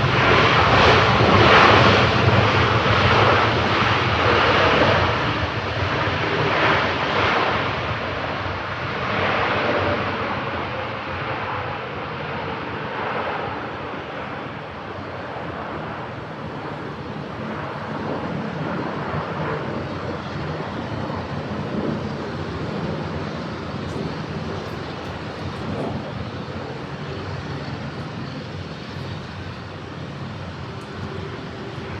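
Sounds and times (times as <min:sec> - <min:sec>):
jet engines of landing airliner: 0:00.0 - 0:32.0.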